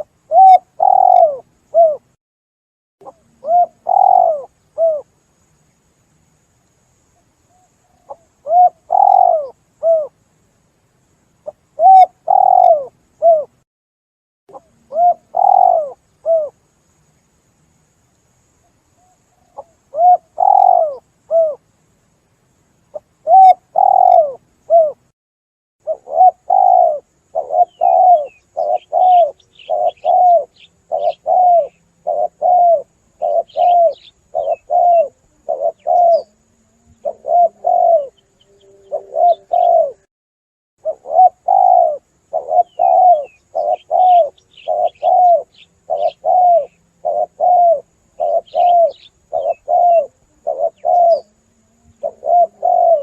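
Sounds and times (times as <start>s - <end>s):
small birds chirping: 0.0s - 2.0s, 3.0s - 5.8s, 7.1s - 10.1s, 11.4s - 13.5s, 14.5s - 17.3s, 18.6s - 22.2s, 22.8s - 25.0s, 25.8s - 40.0s, 40.8s - 53.0s
doves cooing: 0.0s - 2.1s, 3.0s - 5.1s, 7.8s - 10.1s, 11.4s - 13.5s, 14.5s - 16.6s, 19.3s - 21.6s, 23.2s - 25.0s, 25.8s - 40.1s, 40.8s - 53.0s.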